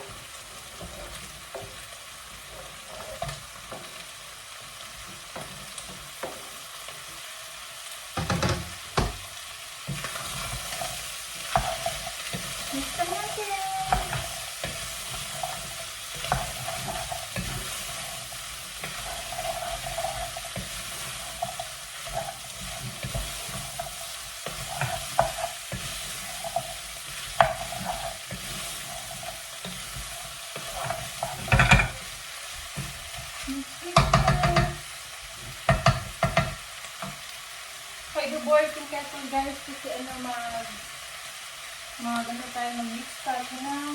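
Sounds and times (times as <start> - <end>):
vegetables sizzling in a frying pan: 0.0 - 43.9
utensil scraping a pan: 9.9 - 34.8.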